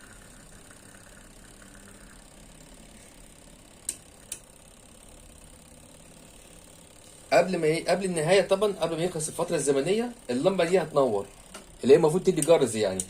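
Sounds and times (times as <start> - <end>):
washing machine motor hum: 0.0 - 13.0
timer clicks: 3.8 - 4.5.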